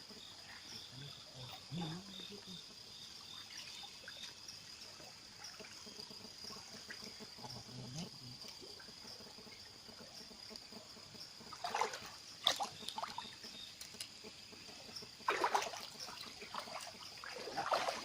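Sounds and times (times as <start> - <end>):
river water splashing and trickling: 0.3 - 7.4, 11.2 - 18.0.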